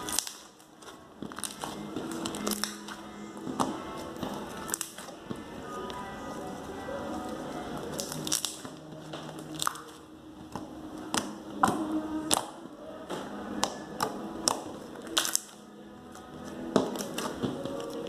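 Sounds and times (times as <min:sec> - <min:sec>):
slime clicking and popping: 0:00.0 - 0:00.7, 0:01.3 - 0:03.0, 0:04.6 - 0:05.2, 0:07.9 - 0:12.6, 0:13.6 - 0:15.6
slime crunching and squishing: 0:00.0 - 0:12.7, 0:13.5 - 0:18.0.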